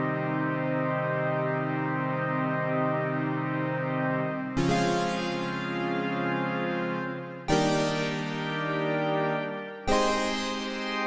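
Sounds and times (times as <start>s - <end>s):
synthesizer playing held chords: 4.6s - 11.0s.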